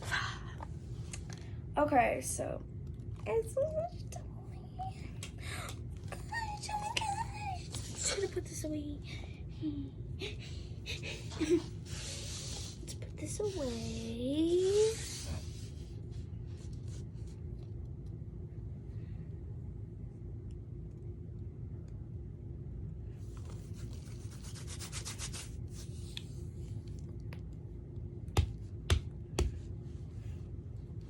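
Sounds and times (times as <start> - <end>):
low hum: 0.0 - 31.0
rubbing and scraping: 11.2 - 15.9.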